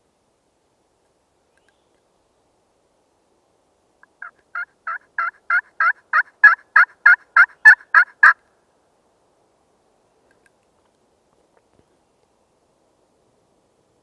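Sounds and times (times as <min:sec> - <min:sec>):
turkey yelps: 0:04.2 - 0:08.4.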